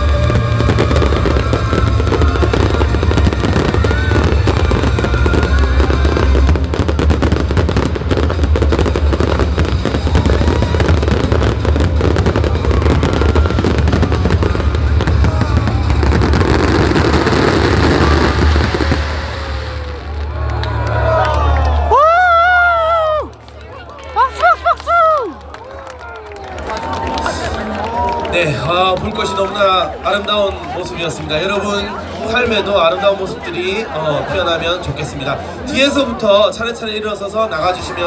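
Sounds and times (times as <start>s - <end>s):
fireworks crackling and booming: 0.0s - 21.1s.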